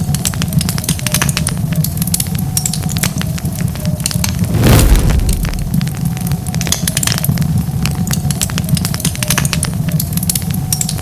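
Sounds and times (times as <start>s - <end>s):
low rumble of flames: 2.0s - 9.0s
wood fire crackling pops: 4.1s - 7.4s.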